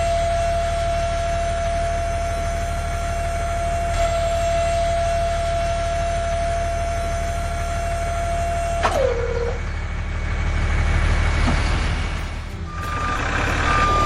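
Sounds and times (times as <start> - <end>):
low pulsing hum: 0.0 - 14.0
electric motor whine: 12.2 - 14.0.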